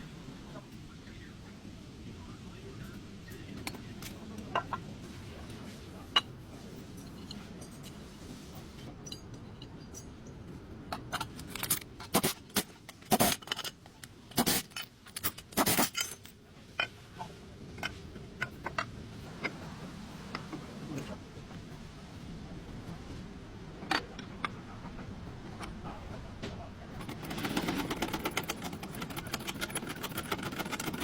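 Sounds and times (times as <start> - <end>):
metal tools clinking and scraping: 10.9 - 17.0, 27.0 - 31.0.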